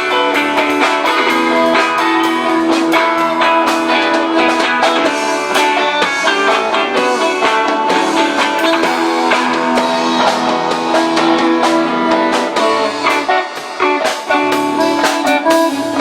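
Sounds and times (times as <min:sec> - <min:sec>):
band playing instrumental: 0:00.0 - 0:16.0.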